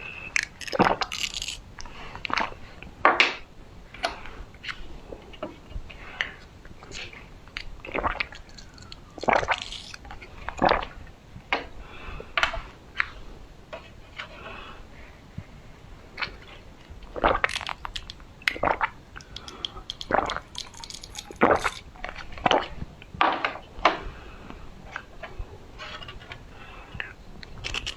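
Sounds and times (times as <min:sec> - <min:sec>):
drinking sips and swallows: 0:17.1 - 0:21.9.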